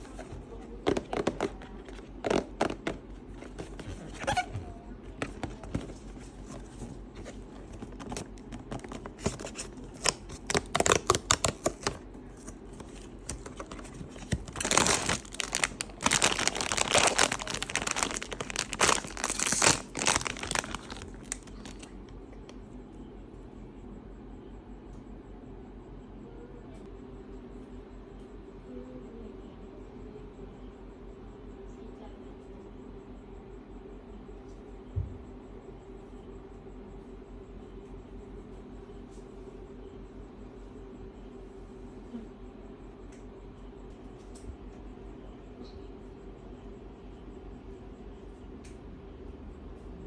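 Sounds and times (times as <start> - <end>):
packaging crackling and crinkling: 0.0 - 4.5, 5.1 - 22.1
packaging tearing and rustling: 1.0 - 4.5, 5.2 - 22.0.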